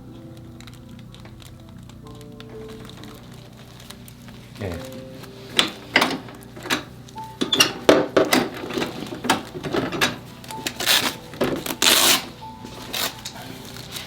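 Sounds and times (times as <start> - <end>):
rustling: 0.0 - 14.0
clicks and knocks: 5.6 - 10.8.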